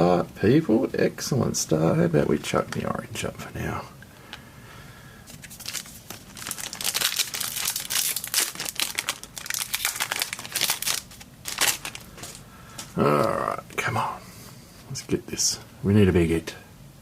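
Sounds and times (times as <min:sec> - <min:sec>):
plastic wrapper crinkling and tearing: 0:05.3 - 0:13.4.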